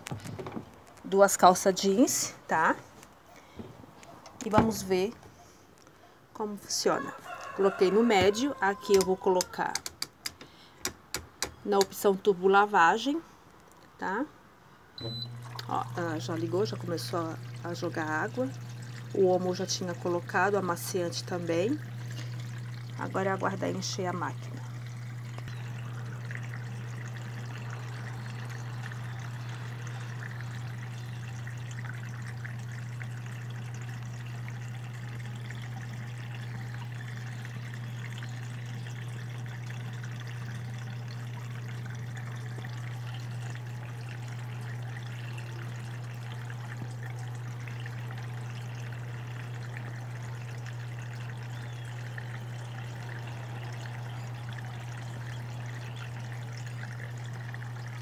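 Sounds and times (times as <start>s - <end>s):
water pouring into washing machine: 4.4s - 5.1s, 6.9s - 9.8s, 15.0s - 58.0s
low hum: 15.0s - 58.0s.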